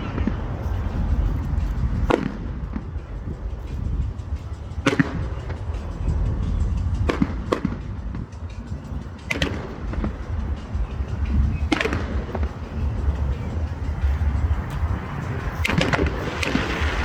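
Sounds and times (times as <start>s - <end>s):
fireworks bangs: 0.0s - 1.0s, 15.6s - 17.0s.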